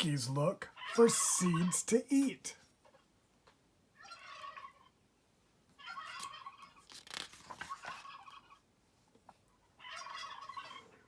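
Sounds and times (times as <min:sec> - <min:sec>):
crackly rustle: 0:05.8 - 0:10.7.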